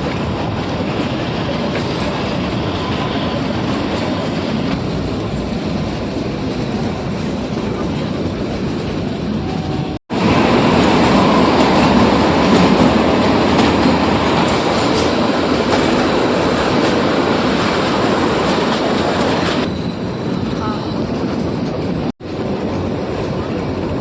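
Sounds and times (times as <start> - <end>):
train carriages rumbling: 0.0 - 24.0
wheels clicking on rails: 10.2 - 19.7.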